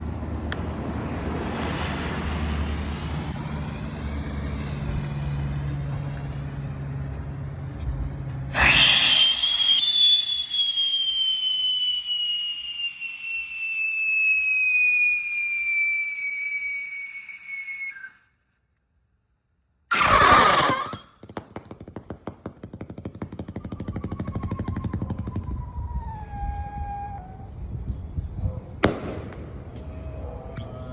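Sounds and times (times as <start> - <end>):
firework rocket whistling: 0.4 - 6.8, 8.5 - 18.3, 19.9 - 27.7
firework rocket lighting burst: 0.4 - 6.9, 8.5 - 18.1, 19.9 - 26.0, 28.8 - 29.8.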